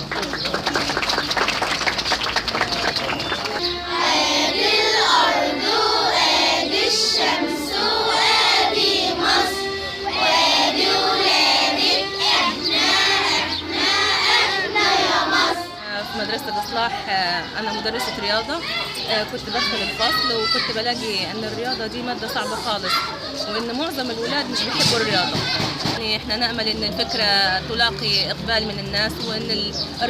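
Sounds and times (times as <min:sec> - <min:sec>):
crowd noise: 0:00.0 - 0:30.0
children singing together: 0:03.6 - 0:15.8.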